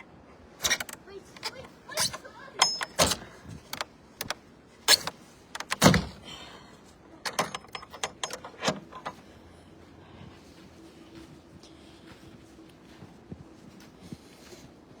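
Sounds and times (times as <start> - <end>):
sharp clicks and knocks: 0.6 - 6.2, 7.3 - 9.2.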